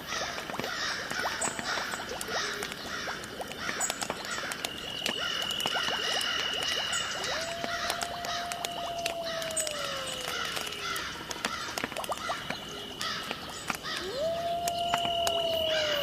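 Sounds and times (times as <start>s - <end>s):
frog chorus: 0.0s - 16.0s
long wailing call: 4.4s - 11.8s, 12.4s - 16.0s.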